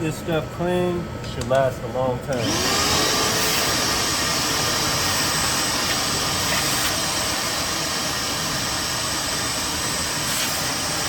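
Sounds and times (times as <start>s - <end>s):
shop vac motor running: 2.3s - 11.0s.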